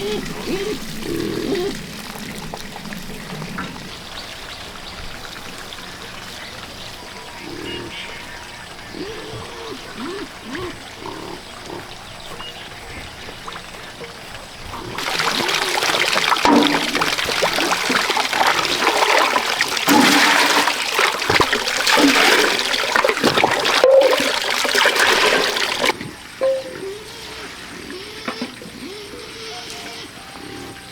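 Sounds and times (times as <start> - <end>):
water splashing and rushing: 9.7 - 26.0.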